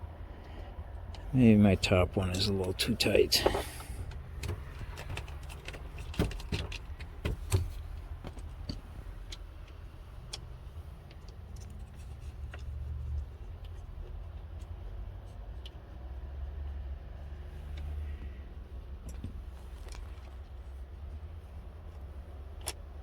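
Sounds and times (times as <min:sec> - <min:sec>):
low steady hum: 0:00.0 - 0:23.0.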